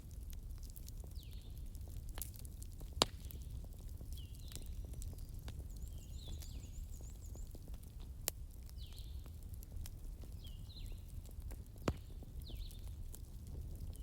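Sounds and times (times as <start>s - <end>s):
bonfire crackling and popping: 0.0s - 14.0s
low fire rumble: 0.0s - 14.0s
birds chirping: 4.2s - 7.6s.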